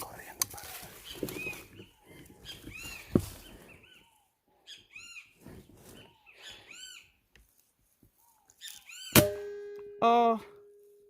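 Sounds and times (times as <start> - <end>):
bird chirping: 0.8 - 7.3, 8.2 - 9.5.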